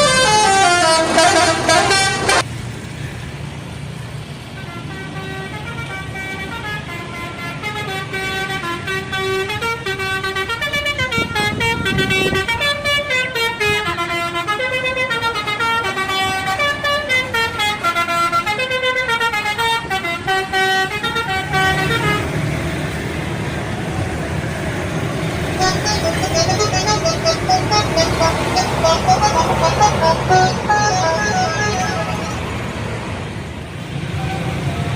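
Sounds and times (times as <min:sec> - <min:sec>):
bus horn melody: 0:00.0 - 0:02.5, 0:04.6 - 0:22.4, 0:25.5 - 0:33.0
bus engine rumble: 0:00.0 - 0:34.9
road noise: 0:00.0 - 0:34.9.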